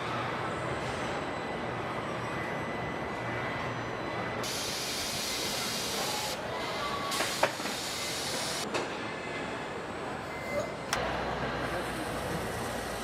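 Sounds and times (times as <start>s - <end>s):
factory machinery noise: 0.0s - 13.0s
loud air hiss: 4.4s - 8.6s.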